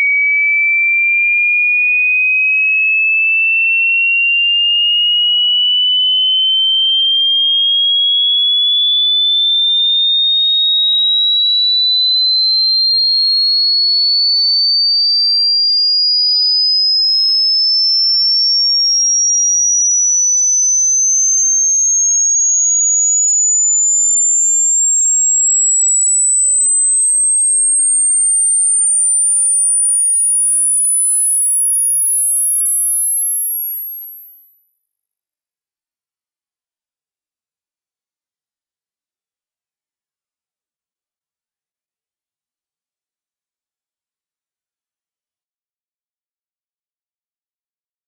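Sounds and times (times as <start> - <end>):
rising test tone sweep: 20.2 - 40.5.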